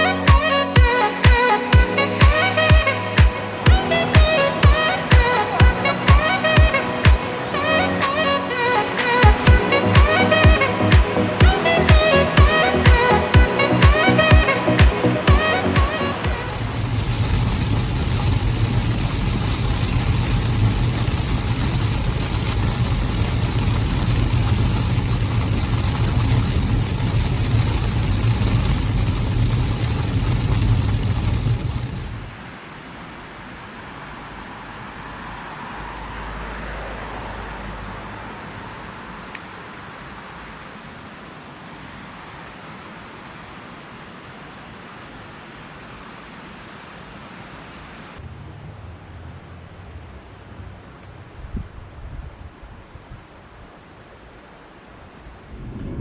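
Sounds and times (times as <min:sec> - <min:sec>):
steady rushing hiss: 0:00.9 - 0:32.6
low hum: 0:16.3 - 0:32.4
car road and engine noise: 0:16.3 - 0:32.5.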